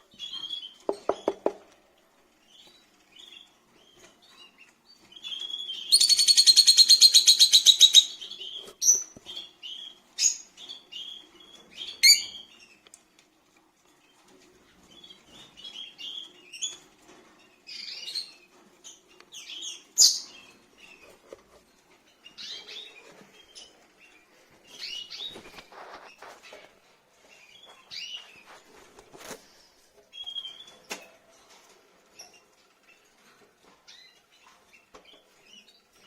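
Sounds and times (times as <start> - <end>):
lovebirds chirping: 14.8 - 30.9
scratchy rustling: 24.7 - 29.8.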